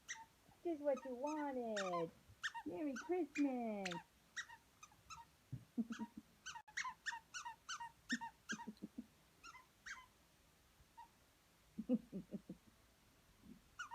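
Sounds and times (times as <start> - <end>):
squeaky toy squeaking: 0.0 - 0.3, 0.9 - 5.3, 5.9 - 8.7, 9.4 - 10.1.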